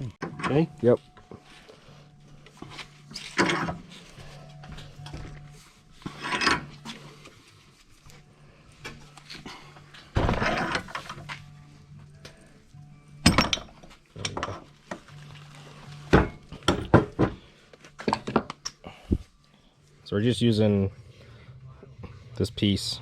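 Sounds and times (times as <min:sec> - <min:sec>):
metal tools being handled: 0:02.5 - 0:07.0.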